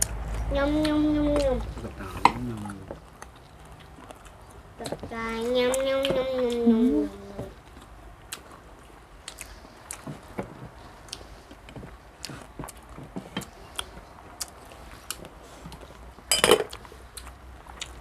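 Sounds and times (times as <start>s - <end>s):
utensils clinking against plates: 16.3s - 16.7s.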